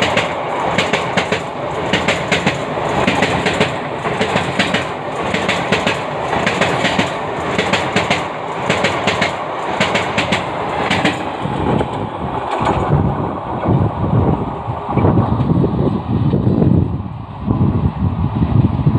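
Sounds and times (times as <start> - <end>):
train wheels clacking over rail joints: 0.0 - 13.1
low train rumble: 0.0 - 18.9.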